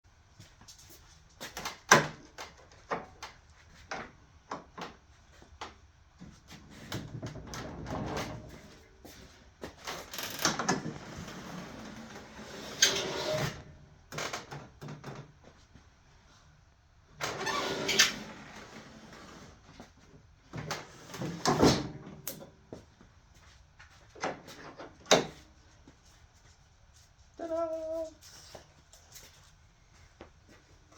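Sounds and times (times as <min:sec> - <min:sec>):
items scraping or rolling on cart: 0:10.7 - 0:13.6, 0:17.3 - 0:19.7.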